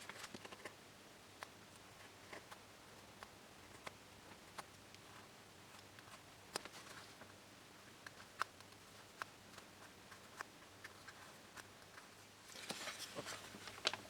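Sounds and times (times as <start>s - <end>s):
rustling and clicking: 8.0s - 14.0s.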